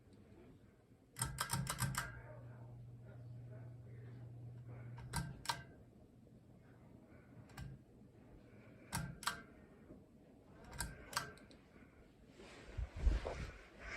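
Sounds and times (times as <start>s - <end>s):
fan switch clicking: 1.2s - 2.4s, 4.7s - 5.8s, 7.4s - 7.8s, 8.8s - 9.6s, 10.6s - 11.6s
low motor hum: 2.2s - 5.4s.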